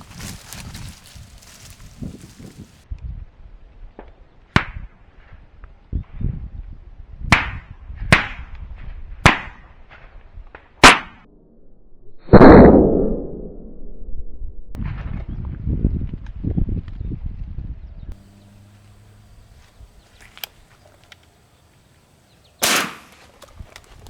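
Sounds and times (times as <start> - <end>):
shotgun shots: 10.8 - 11.2, 22.6 - 23.2.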